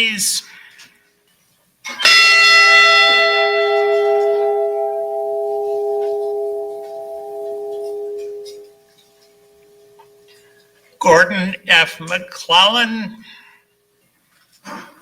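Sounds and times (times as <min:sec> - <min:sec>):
bell tolling: 0:02.0 - 0:08.8.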